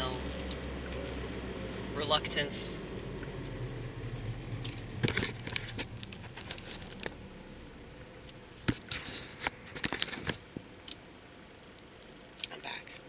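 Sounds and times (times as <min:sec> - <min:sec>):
device handling clicks and rustling: 0:08.3 - 0:11.0.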